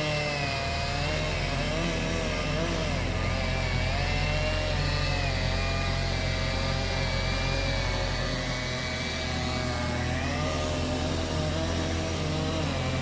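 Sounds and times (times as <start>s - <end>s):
engine running: 0.0s - 13.0s.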